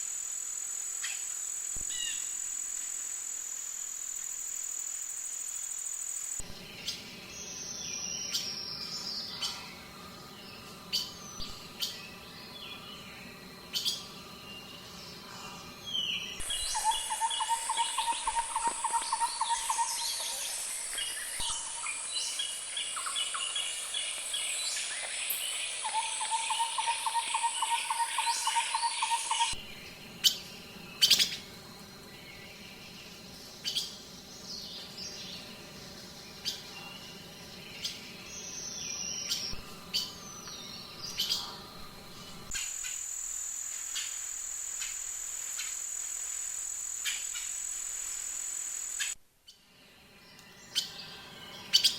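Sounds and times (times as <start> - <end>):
high insect drone: 0.0 - 49.2, 49.8 - 51.9
high-pitched insect trill: 0.0 - 49.2
birds singing: 6.4 - 42.8, 49.6 - 51.9.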